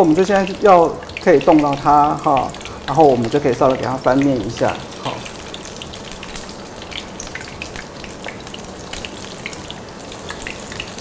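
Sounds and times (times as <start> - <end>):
cutlets sizzling in hot oil: 0.0 - 11.0.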